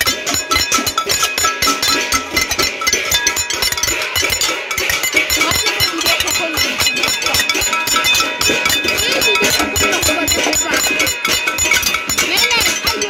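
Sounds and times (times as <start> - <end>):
pots and pans banging: 0.0 - 13.0.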